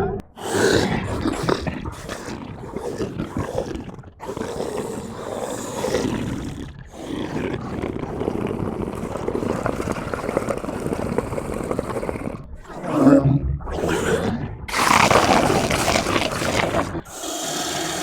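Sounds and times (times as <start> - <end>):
creature growling roars: 0.0 - 18.0.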